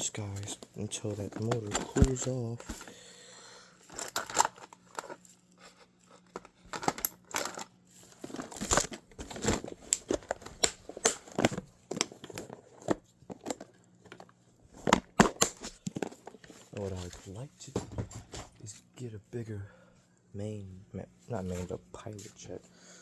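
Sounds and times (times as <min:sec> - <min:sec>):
faint steady hum: 0:00.0 - 0:23.0
metal tools clinking: 0:01.1 - 0:02.9, 0:03.8 - 0:05.2, 0:06.4 - 0:08.9.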